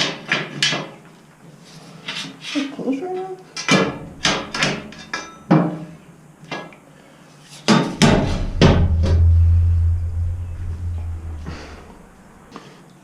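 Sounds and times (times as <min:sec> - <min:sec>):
low hum: 0:03.8 - 0:05.2, 0:08.0 - 0:12.6.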